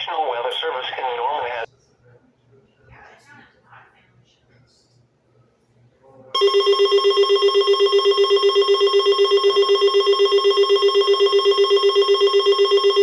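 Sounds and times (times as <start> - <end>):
rapidly pulsing electronic beep: 6.4 - 13.0.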